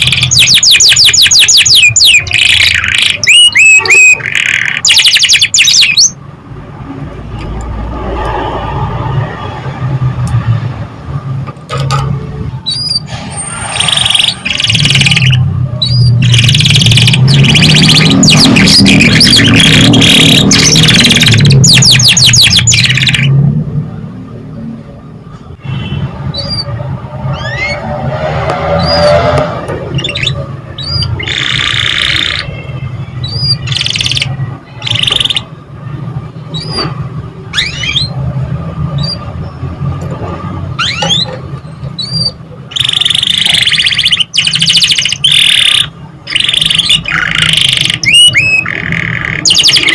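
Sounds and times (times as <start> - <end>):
canary singing: 0.0 - 6.2, 12.6 - 23.4, 26.3 - 28.0, 28.8 - 35.6, 36.3 - 39.8, 40.7 - 49.9.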